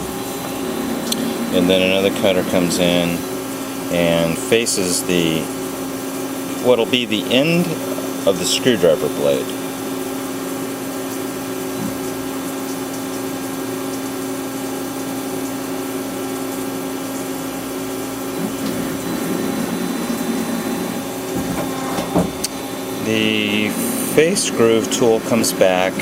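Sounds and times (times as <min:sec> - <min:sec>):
lathe machine hum: 0:00.0 - 0:12.6, 0:16.0 - 0:26.0.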